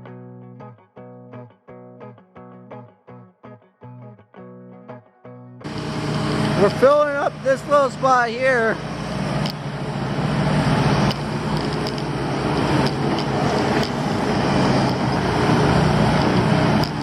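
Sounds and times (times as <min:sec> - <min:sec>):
heavy diesel engine running: 0:05.6 - 0:17.0.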